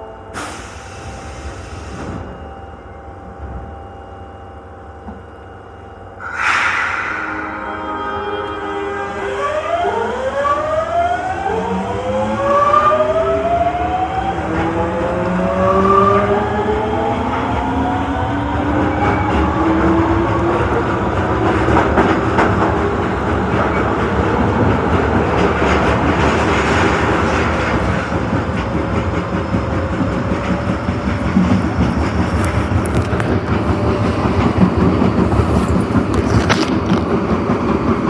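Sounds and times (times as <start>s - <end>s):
subway train rumbling: 0.0s - 38.0s.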